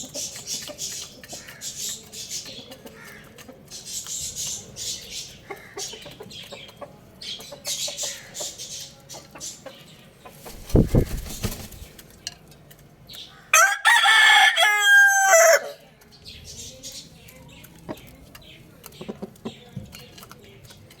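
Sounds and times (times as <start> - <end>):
rooster crowing: 13.5 - 15.8.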